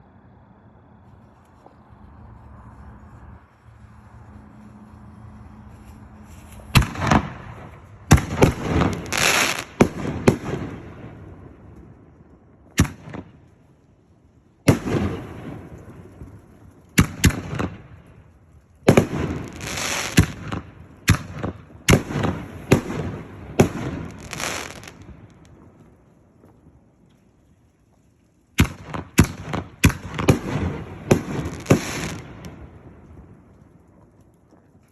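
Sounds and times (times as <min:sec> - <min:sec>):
firework hiss: 0:08.2 - 0:09.8, 0:19.0 - 0:20.5, 0:23.6 - 0:25.0, 0:31.2 - 0:32.2.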